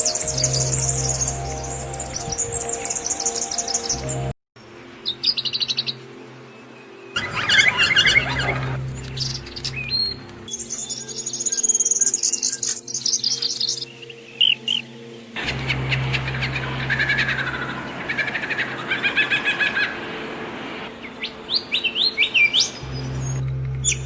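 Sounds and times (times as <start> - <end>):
songbirds chirping and singing: 0.0 - 20.1, 20.8 - 24.0.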